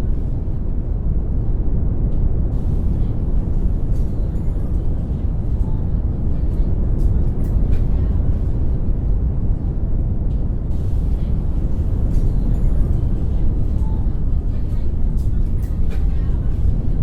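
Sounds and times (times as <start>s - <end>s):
deep brown noise rumble: 0.0s - 17.0s.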